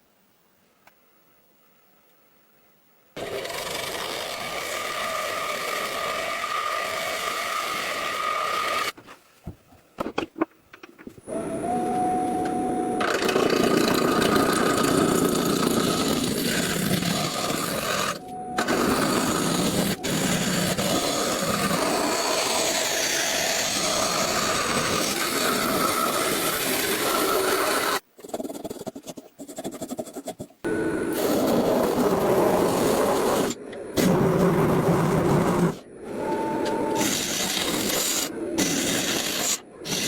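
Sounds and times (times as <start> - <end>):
power tools grinding wood: 3.2 - 9.0, 11.4 - 28.0.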